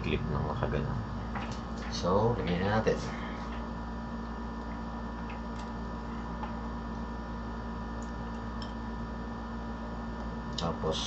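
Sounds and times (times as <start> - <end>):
electrical hum: 0.0 - 11.0.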